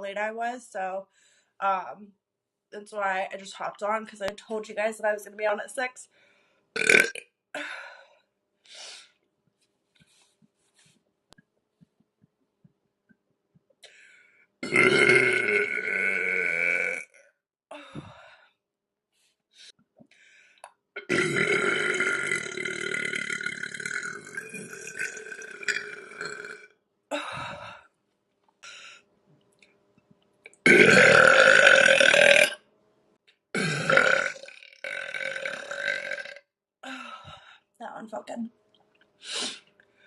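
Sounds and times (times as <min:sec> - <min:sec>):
woman burping: 0:06.8 - 0:07.6, 0:14.6 - 0:17.2, 0:21.0 - 0:27.8, 0:30.6 - 0:32.6, 0:33.5 - 0:36.4.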